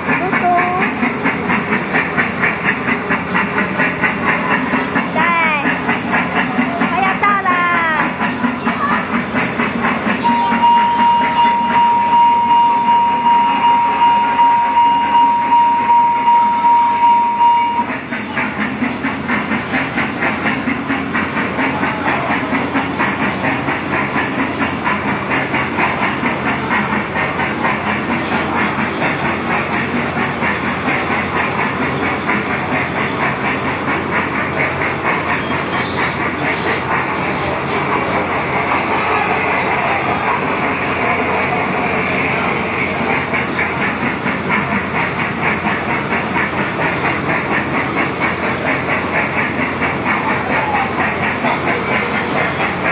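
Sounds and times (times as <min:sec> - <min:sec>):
kiddie ride rhythmic pulsing: 0:00.0 - 0:52.9
long steady tone: 0:10.2 - 0:17.9.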